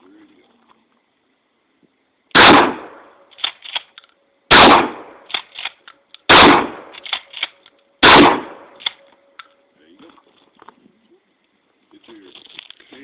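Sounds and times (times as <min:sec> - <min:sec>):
gunshots: 0:02.3 - 0:03.9, 0:04.5 - 0:09.0
faint sharp cracks: 0:02.3 - 0:09.6.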